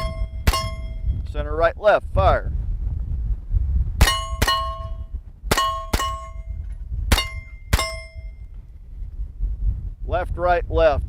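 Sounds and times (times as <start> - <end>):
metallic clang of steel targets: 0.0 - 1.2, 4.0 - 8.5.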